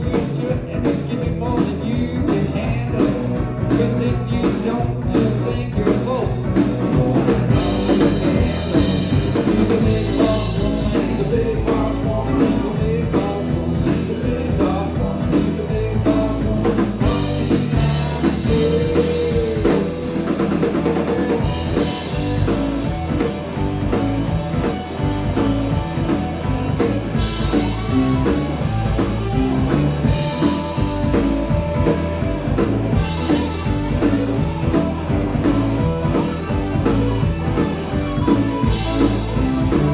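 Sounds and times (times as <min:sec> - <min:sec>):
live band playing instrumental: 0:00.1 - 0:39.9.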